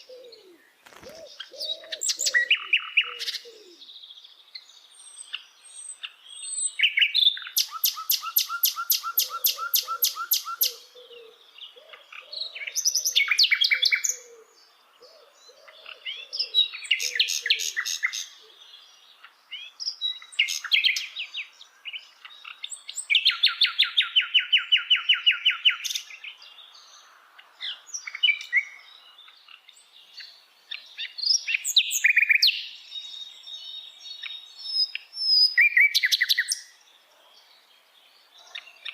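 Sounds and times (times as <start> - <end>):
bird singing trills: 0.0 - 38.9.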